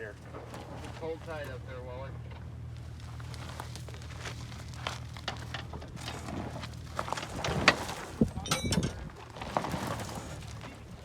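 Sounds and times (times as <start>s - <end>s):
crunching on dirt and rock: 2.7s - 11.0s.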